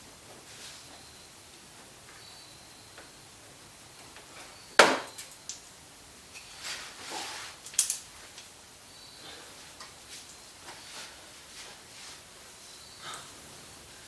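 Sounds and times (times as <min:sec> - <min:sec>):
short scraping rustle: 0:06.4 - 0:07.7, 0:10.0 - 0:12.3.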